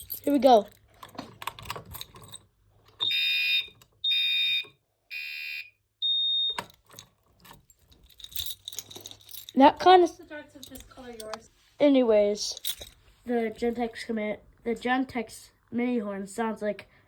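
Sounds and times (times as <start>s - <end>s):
clicking and rattling: 0.0s - 3.1s, 6.6s - 9.7s, 10.6s - 11.5s, 12.5s - 13.0s
buzzing fire alarm horn blasts: 3.0s - 6.6s.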